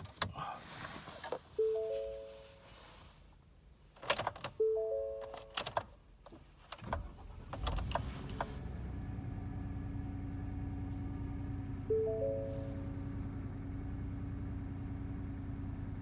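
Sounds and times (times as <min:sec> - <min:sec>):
dashboard chime: 0:01.6 - 0:02.6, 0:04.6 - 0:05.3, 0:11.9 - 0:12.8
ignition clicks: 0:06.7 - 0:08.7
engine cranking and idling: 0:06.8 - 0:09.7.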